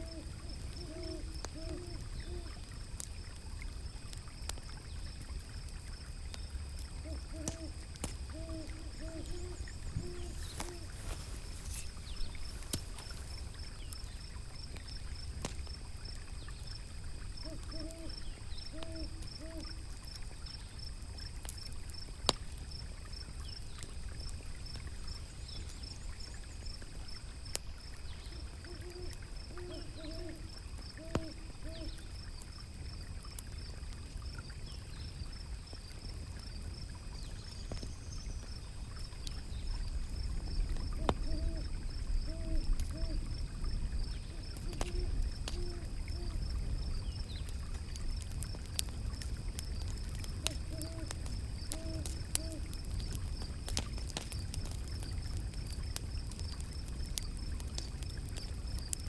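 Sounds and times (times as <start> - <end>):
owl hooting: 0.0 - 2.6, 7.0 - 13.3, 17.4 - 19.8, 28.3 - 32.0, 41.0 - 43.2, 44.3 - 46.4, 50.5 - 51.1, 51.7 - 52.7
wood fire crackling and popping: 0.0 - 59.0.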